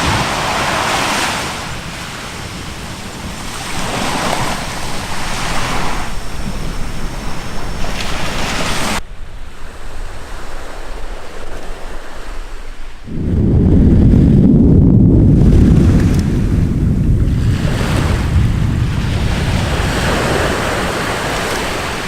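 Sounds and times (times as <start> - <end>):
breaking surf: 0.0 - 22.0
wind buffeting microphone: 0.0 - 22.0
loud low rumble: 1.6 - 20.8.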